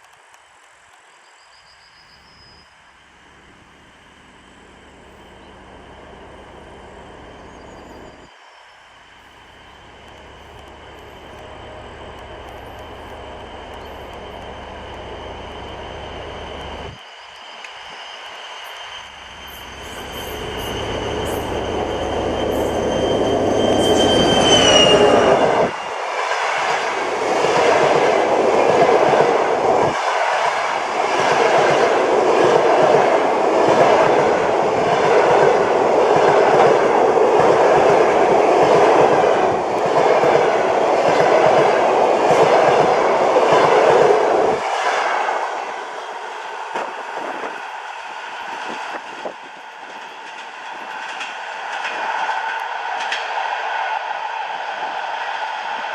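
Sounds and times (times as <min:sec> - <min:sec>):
locomotive engine rumble and whine: 0:02.9 - 0:17.9, 0:18.8 - 0:25.9
train carriages rushing past: 0:04.4 - 0:55.9
train wheels clickety-clack: 0:19.4 - 0:45.3, 0:46.3 - 0:54.1.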